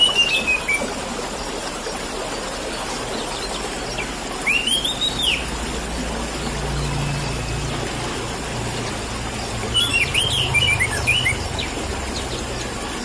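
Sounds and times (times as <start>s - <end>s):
bird whistling song: 0.0s - 0.9s, 4.4s - 5.5s, 9.7s - 12.4s
trickling water: 0.0s - 13.0s.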